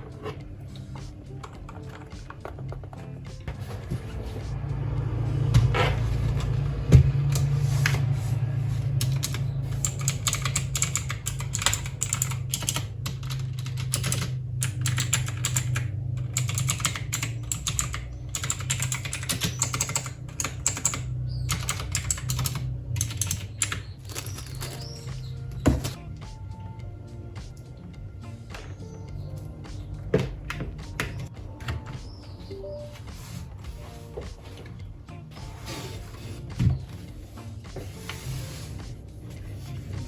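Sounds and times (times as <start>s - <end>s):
mechanical keyboard typing: 9.0s - 25.0s.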